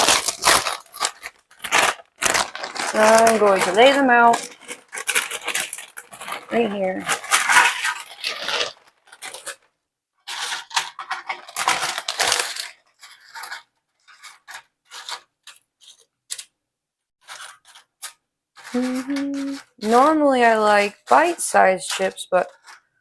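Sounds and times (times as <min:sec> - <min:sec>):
tortilla chips crackling on pan: 0:00.0 - 0:16.5.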